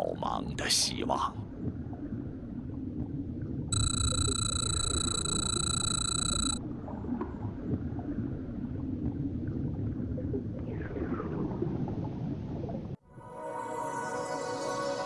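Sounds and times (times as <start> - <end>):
music: 13.0 - 15.0.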